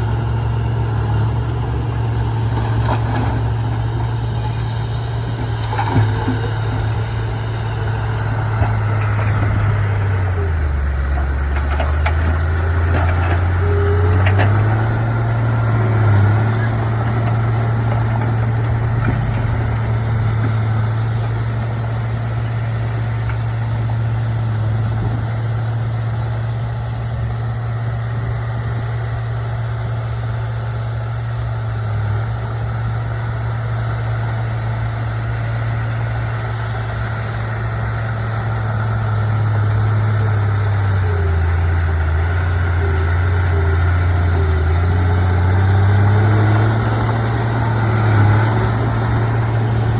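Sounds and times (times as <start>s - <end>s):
bulldozer diesel engine running: 0.0s - 49.9s.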